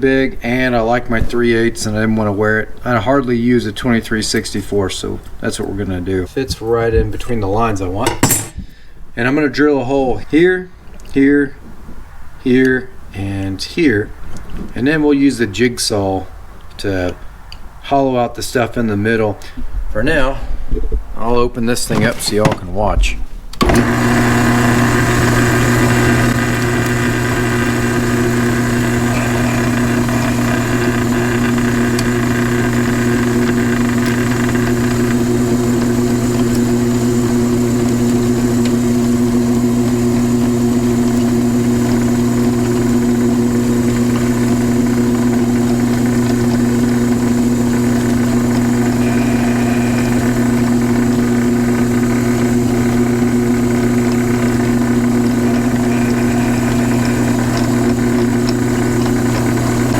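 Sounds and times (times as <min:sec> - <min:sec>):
drill press motor humming: 0:08.1 - 0:08.6, 0:23.6 - 0:59.9
drill cutting steel: 0:23.6 - 0:59.9.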